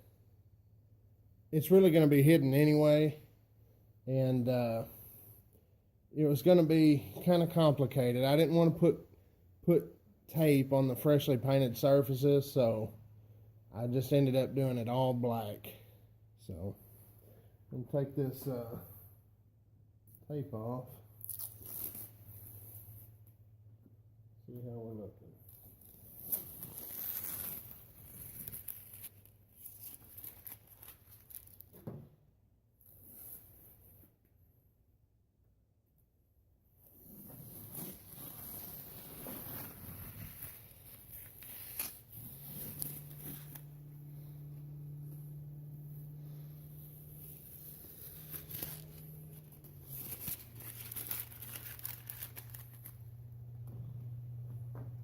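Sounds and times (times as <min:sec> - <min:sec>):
tape peeling off: 0:21.2 - 0:22.6, 0:25.5 - 0:31.8, 0:37.0 - 0:53.1
low hum: 0:41.8 - 0:55.0.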